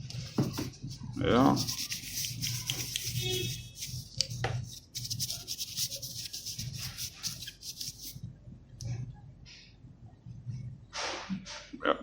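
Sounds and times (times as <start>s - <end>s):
scratchy rubbing: 0.2s - 8.2s.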